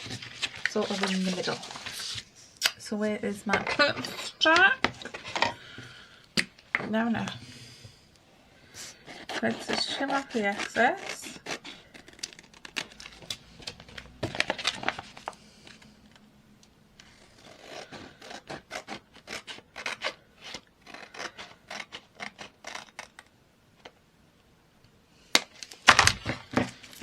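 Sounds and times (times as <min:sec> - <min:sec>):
scissors snipping paper: 0:09.0 - 0:13.4.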